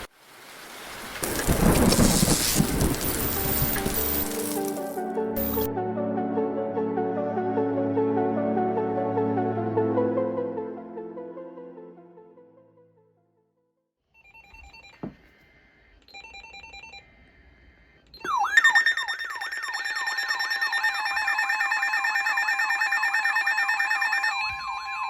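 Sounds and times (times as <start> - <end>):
faint data-header tones: 1.2 - 5.7
warbling electronic alarm: 1.3 - 5.7, 16.1 - 25.0.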